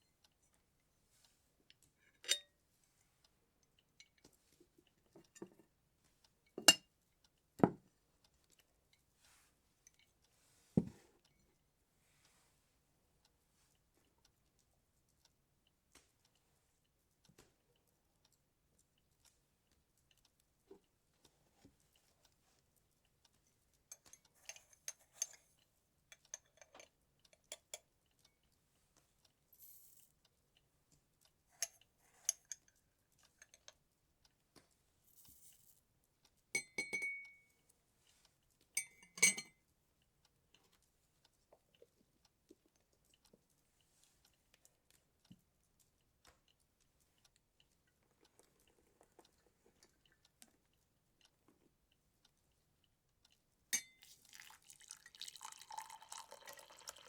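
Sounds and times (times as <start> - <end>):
cups and glassware clinking: 6.6 - 6.8, 36.6 - 37.3, 38.8 - 39.5, 53.8 - 57.0.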